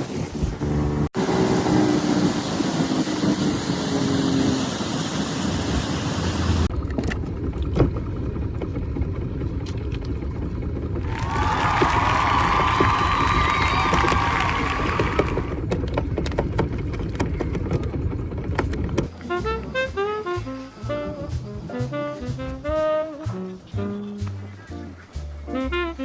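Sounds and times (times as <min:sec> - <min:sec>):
motorboat engine running: 0:00.3 - 0:24.4
rush of wind and water: 0:01.2 - 0:19.1.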